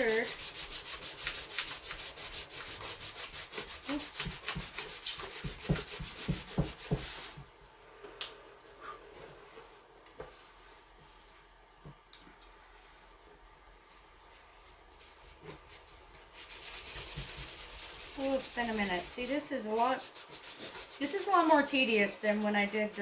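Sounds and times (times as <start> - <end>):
hand sanding with sandpaper: 0.0 - 7.4, 15.7 - 23.0.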